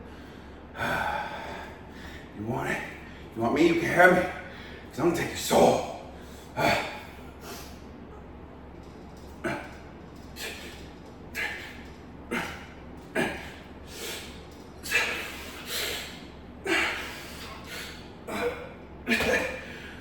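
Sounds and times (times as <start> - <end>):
man breathing and grunting: 0.0 - 4.9, 5.6 - 8.2, 8.9 - 20.0.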